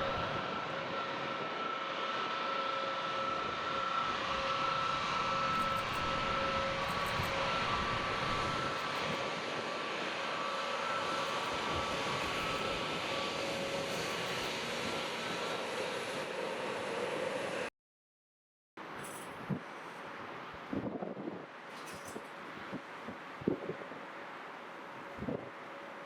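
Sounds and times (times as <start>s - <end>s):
jet engines whining: 0.0s - 17.7s.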